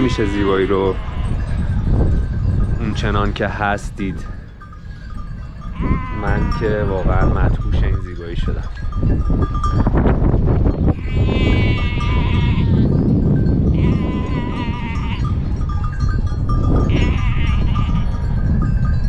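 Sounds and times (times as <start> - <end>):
sheep bleating: 0.0 - 1.7, 5.7 - 7.1, 10.9 - 13.0, 13.7 - 15.4, 16.8 - 18.3.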